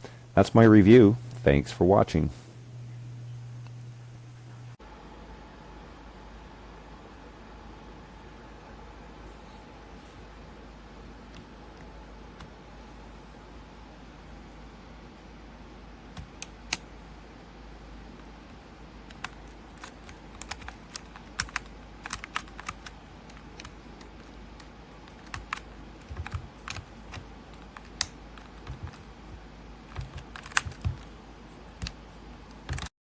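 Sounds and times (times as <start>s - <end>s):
steady low hum: 0.0s - 32.9s
mechanical keyboard clicking: 19.1s - 24.4s, 25.1s - 29.0s, 29.9s - 31.1s, 31.8s - 32.9s.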